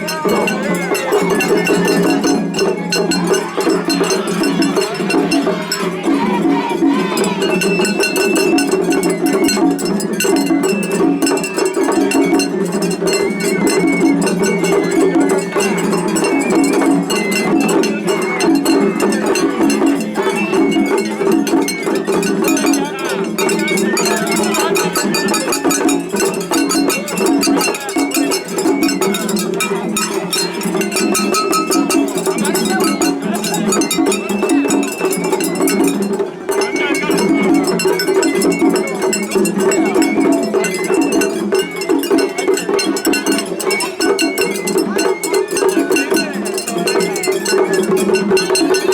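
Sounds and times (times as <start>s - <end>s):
bamboo flute melody: 0.0s - 48.9s
taiko drums: 0.0s - 48.9s.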